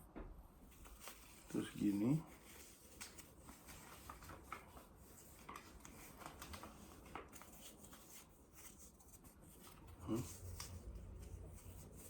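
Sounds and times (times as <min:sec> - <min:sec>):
faint rustles and clicks of strap: 0:00.6 - 0:12.0.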